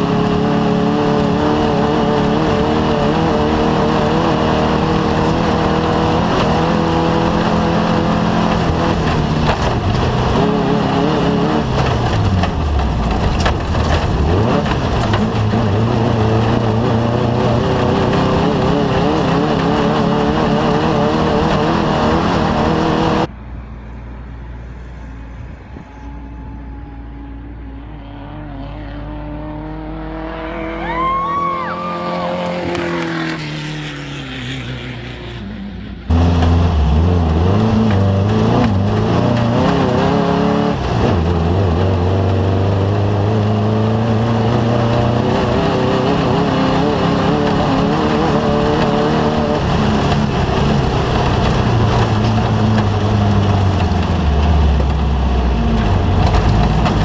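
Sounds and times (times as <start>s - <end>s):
race vehicle engine running hard: 0.0s - 57.0s
vehicle engine passing: 0.0s - 57.0s.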